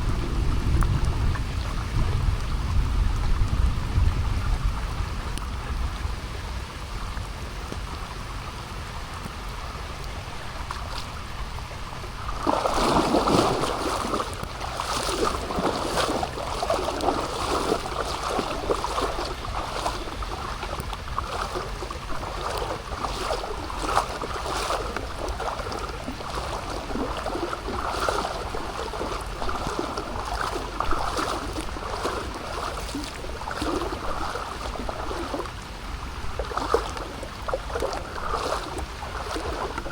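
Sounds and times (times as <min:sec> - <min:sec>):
low rumble: 0:00.0 - 0:07.6
water rushing and splashing: 0:00.0 - 0:39.9.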